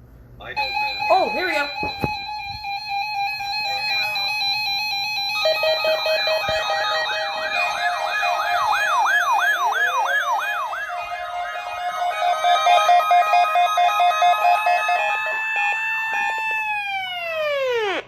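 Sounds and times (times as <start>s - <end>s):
steady electronic tone: 0.6s - 16.0s
pulsing electronic tones: 0.6s - 17.9s
sweeping siren-like tone: 0.6s - 18.0s.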